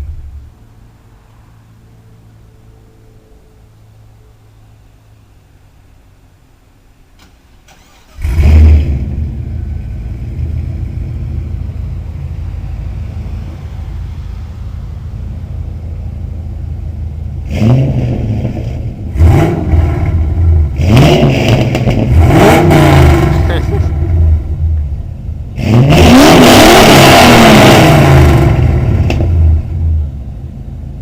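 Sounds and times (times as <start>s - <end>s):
car engine starting and idling: 0.0s - 31.0s
engine revving blips: 17.3s - 24.9s, 25.5s - 30.0s.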